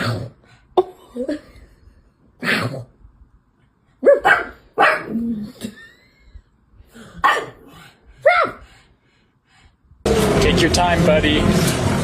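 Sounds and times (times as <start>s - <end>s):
dog barking: 4.0s - 5.2s, 7.2s - 8.6s.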